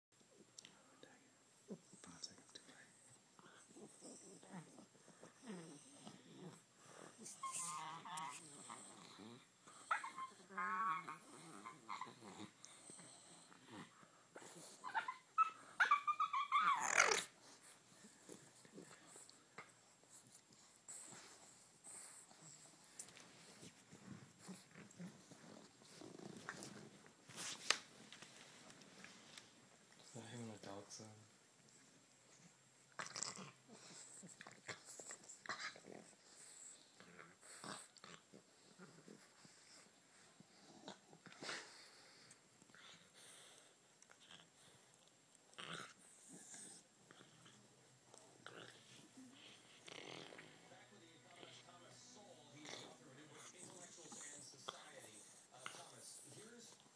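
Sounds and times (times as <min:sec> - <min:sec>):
puppy play noises: 0:03.1 - 0:56.9
puppy whimpering and yipping: 0:07.2 - 0:08.4, 0:09.9 - 0:12.2, 0:14.8 - 0:17.4.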